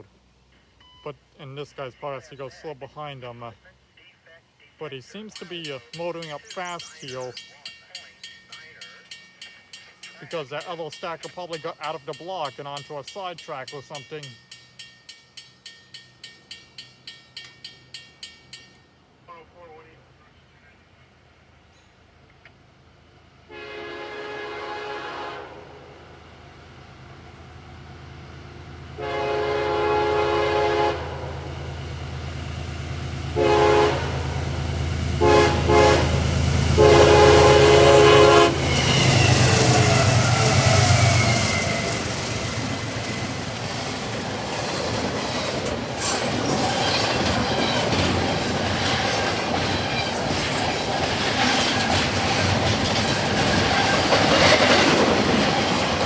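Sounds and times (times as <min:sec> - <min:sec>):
train cars rumbling and clacking: 0:05.1 - 0:19.1, 0:24.4 - 0:56.0
locomotive air horn blasts: 0:23.5 - 0:26.0, 0:29.0 - 0:31.7, 0:33.3 - 0:42.0.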